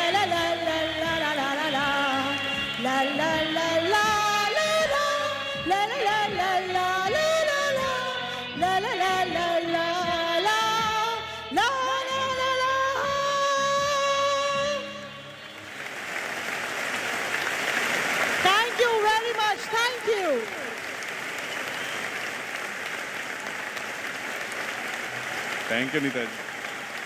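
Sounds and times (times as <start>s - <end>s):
woman singing: 0.0s - 15.4s
backing music: 0.0s - 27.0s.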